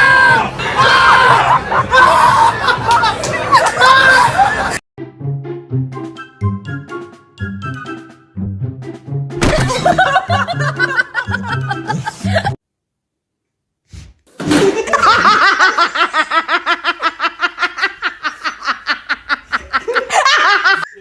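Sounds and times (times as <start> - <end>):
person laughing hard: 1.2 - 4.8, 9.5 - 12.6, 14.5 - 21.0
background music: 4.3 - 12.6.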